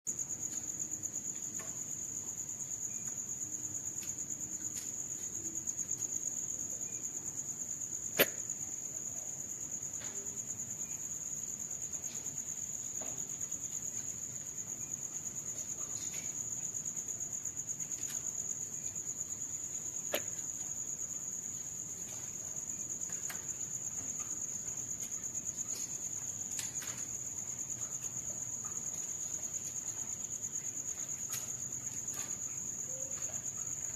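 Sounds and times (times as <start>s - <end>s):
high-pitched insect trill: 0.1s - 33.9s
sharp click: 8.2s - 8.4s.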